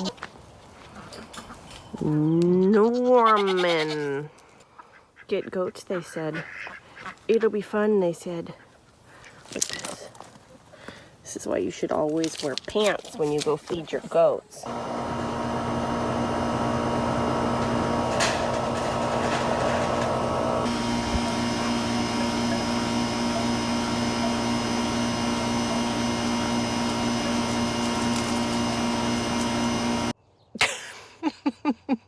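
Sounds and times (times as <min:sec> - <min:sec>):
motor drone: 0:14.6 - 0:30.2.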